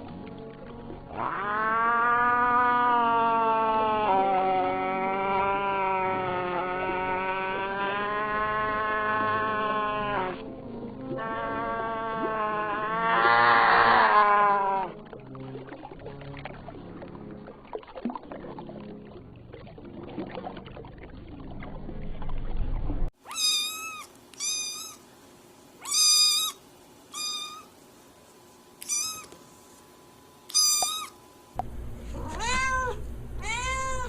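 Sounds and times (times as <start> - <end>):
cat meowing: 1.2 - 10.4, 23.2 - 25.0, 25.8 - 27.7, 28.8 - 29.4, 30.5 - 31.2, 32.2 - 34.0.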